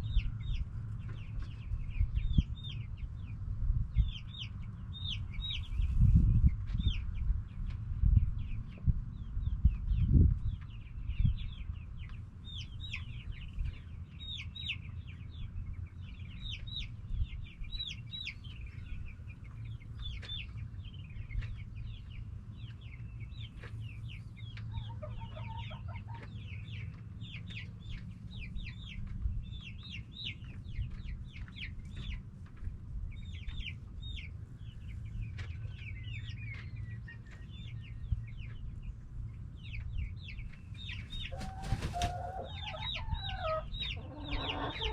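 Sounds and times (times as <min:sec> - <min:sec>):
chickens clucking and calling: 0:08.6 - 0:44.9
lower-pitched chicken call: 0:41.3 - 0:44.9.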